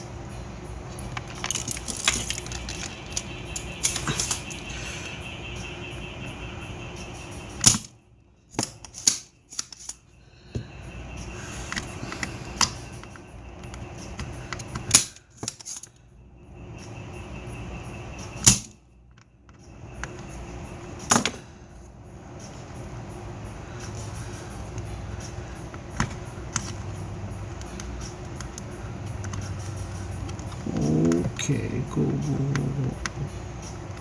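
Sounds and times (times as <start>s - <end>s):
steady background noise: 0.0s - 34.0s
hand tools clicking and knocking: 0.9s - 4.7s.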